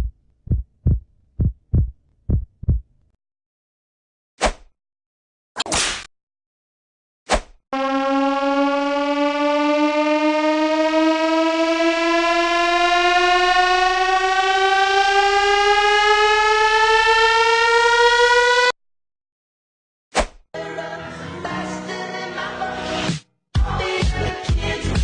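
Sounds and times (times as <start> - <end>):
civil defense siren rising: 7.8 - 18.8.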